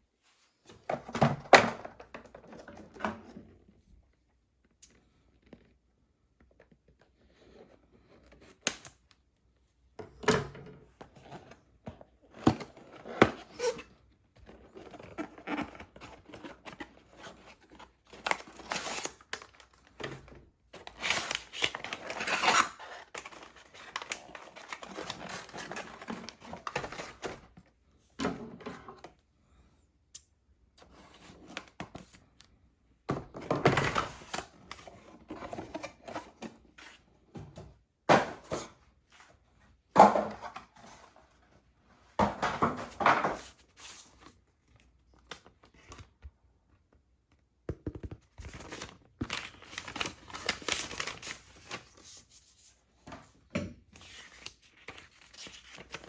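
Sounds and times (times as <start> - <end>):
packaging rustling and tearing: 14.8 - 20.0, 20.8 - 27.2, 48.4 - 52.4.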